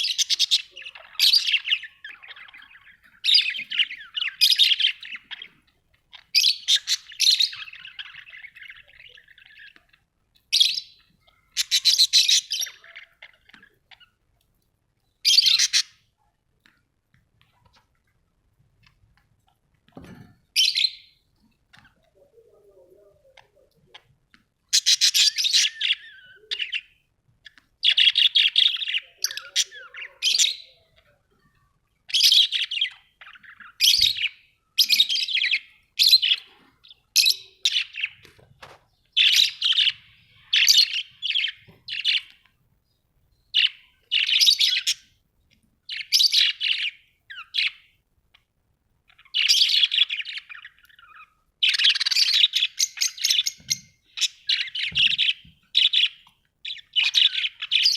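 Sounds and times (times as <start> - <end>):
budgerigars chirping and chattering: 0.0 - 14.2, 15.2 - 16.1, 20.1 - 42.5, 43.5 - 45.2, 45.8 - 48.5, 49.1 - 57.9.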